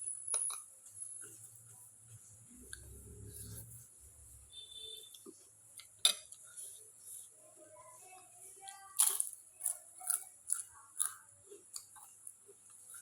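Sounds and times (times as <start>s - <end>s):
crackers crunching while chewed: 8.9s - 13.0s.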